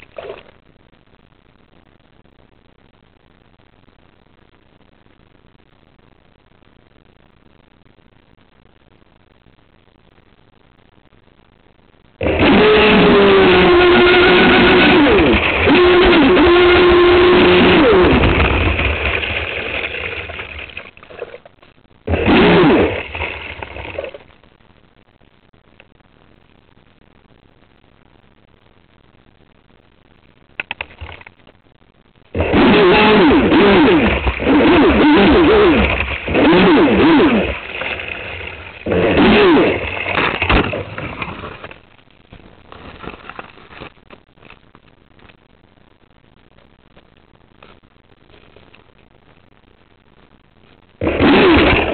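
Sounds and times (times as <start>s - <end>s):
electric motor whining: 12.2s - 19.3s, 22.1s - 23.1s, 32.4s - 37.7s, 38.9s - 39.8s
faint clicks: 24.0s - 32.4s, 40.1s - 51.0s.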